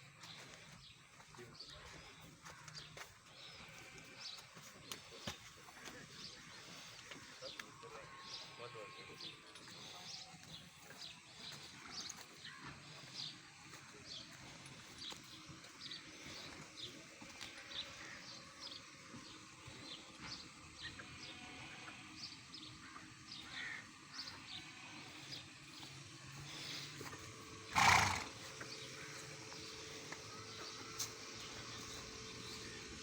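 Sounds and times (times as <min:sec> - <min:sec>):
horse breathy snort: 0:27.7 - 0:28.6.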